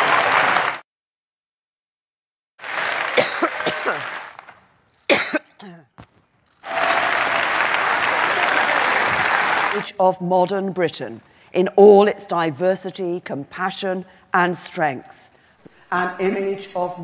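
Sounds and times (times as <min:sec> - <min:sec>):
large hall noise: 0:00.0 - 0:00.8, 0:02.6 - 0:05.4, 0:06.0 - 0:11.3
applause: 0:00.0 - 0:00.9, 0:02.6 - 0:04.6, 0:06.6 - 0:09.9
woman coughing: 0:03.2 - 0:04.1, 0:05.1 - 0:05.9.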